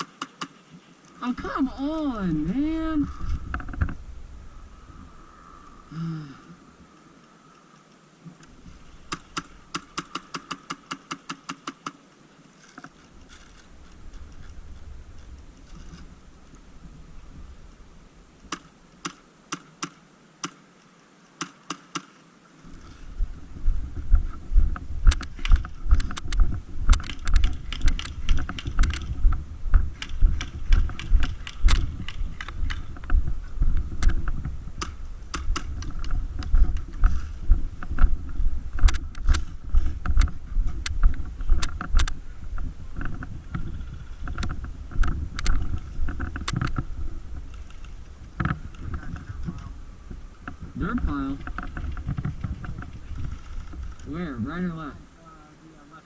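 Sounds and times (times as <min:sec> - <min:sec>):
rustling: 0:00.0 - 0:56.0
heavy low thumps: 0:23.2 - 0:43.7.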